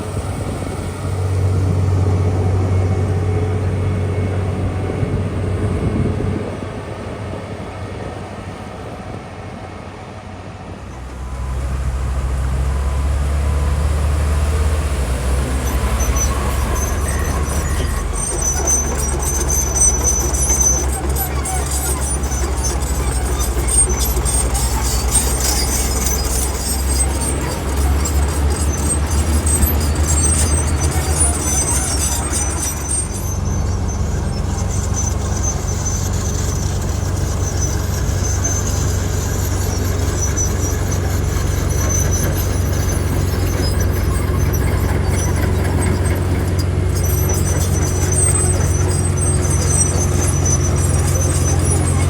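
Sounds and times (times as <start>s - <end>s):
high squeal: 0.0s - 6.4s, 10.9s - 52.0s
heavy diesel machinery rumbling: 0.0s - 52.0s.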